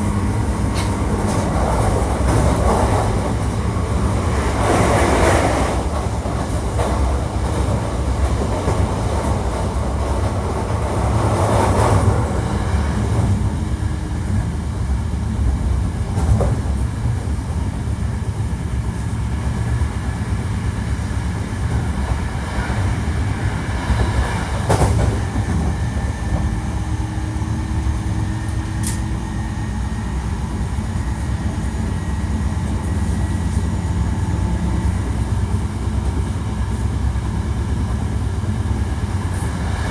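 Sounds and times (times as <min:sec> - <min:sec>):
train wheels rumbling on rail: 0:00.0 - 0:39.9
wheels clickety-clack: 0:00.7 - 0:13.4, 0:23.9 - 0:26.6.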